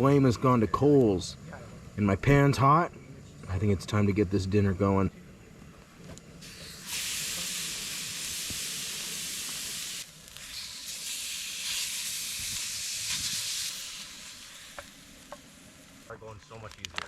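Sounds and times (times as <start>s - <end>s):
steak sizzling in a hot pan: 6.4s - 16.0s.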